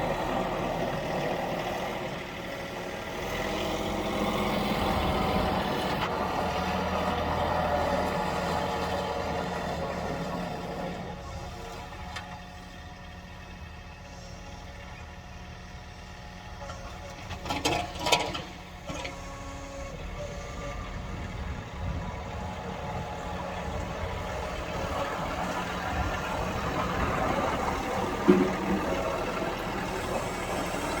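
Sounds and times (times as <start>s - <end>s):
tractor diesel engine running: 0.0s - 31.0s.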